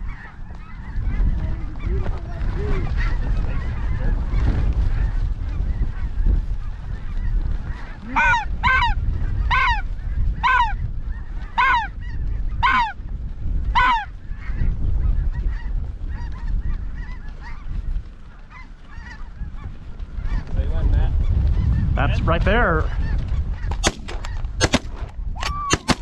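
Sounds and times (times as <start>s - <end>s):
geese calling: 0.0s - 6.1s, 6.7s - 13.0s, 13.7s - 14.6s, 15.3s - 20.5s
wind on microphone: 0.0s - 26.0s
goose honking: 7.7s - 9.8s, 10.4s - 10.8s, 11.5s - 11.9s, 12.6s - 13.0s, 13.8s - 14.1s.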